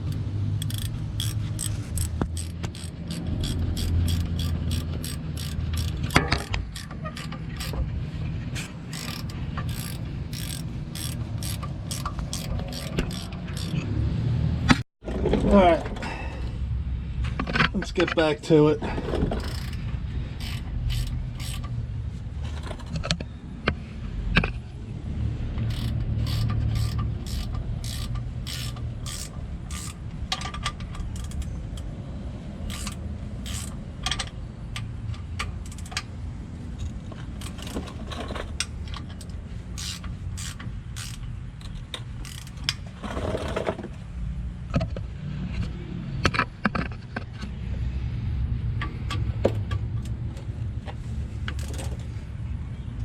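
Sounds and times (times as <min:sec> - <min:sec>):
ratchet strokes: 0:00.0 - 0:07.8, 0:08.5 - 0:13.8, 0:19.4 - 0:21.8, 0:25.6 - 0:30.0, 0:32.6 - 0:33.9, 0:37.4 - 0:43.7
sharp metallic clicks: 0:00.0 - 0:07.8, 0:08.9 - 0:13.8, 0:25.6 - 0:31.9, 0:32.7 - 0:36.2.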